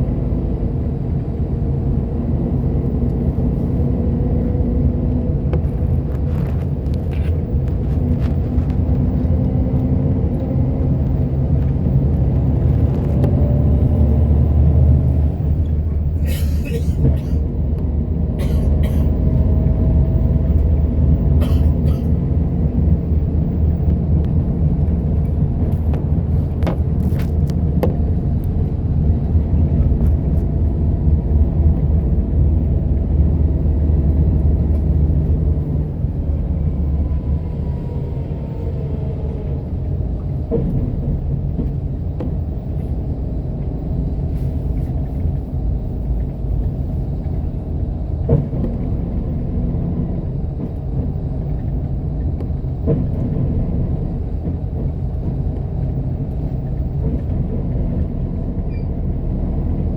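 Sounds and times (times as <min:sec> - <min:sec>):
bus engine and road rumble: 0:00.0 - 0:59.9.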